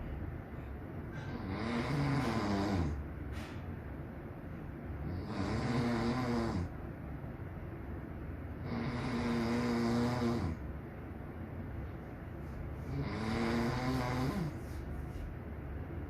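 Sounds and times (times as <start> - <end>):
man snoring: 1.3 - 3.0, 5.0 - 6.8, 8.6 - 10.6, 12.9 - 14.6.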